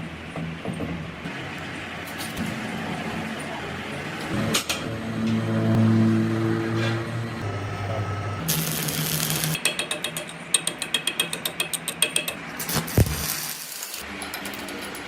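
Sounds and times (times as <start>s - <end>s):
rapid mechanical clicking: 8.5s - 15.0s.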